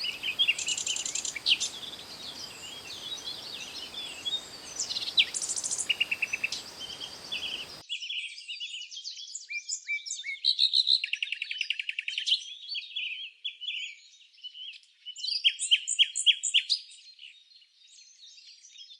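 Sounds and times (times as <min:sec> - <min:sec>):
background hiss: 0:00.0 - 0:07.8
songbirds chirping and trilling: 0:00.0 - 0:07.8.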